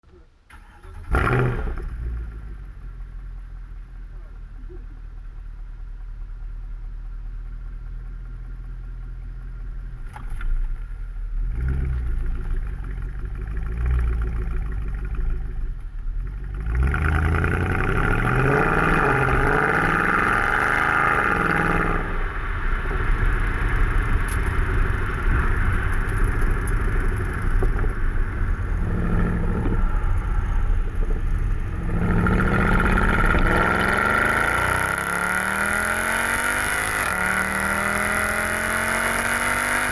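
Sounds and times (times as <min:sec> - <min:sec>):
car engine revving: 0:00.5 - 0:03.9, 0:09.2 - 0:39.9.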